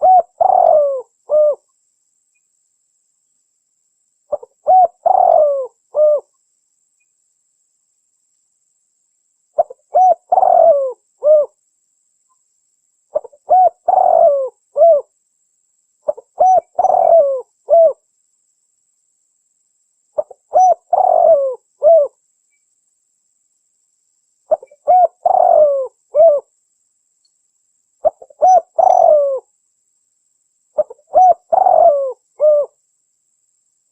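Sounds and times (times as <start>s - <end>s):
dove cooing: 0.0s - 1.6s, 4.3s - 6.3s, 9.6s - 11.6s, 13.1s - 15.1s, 16.1s - 18.0s, 20.2s - 22.2s, 24.5s - 26.5s, 28.0s - 29.5s, 30.8s - 32.8s.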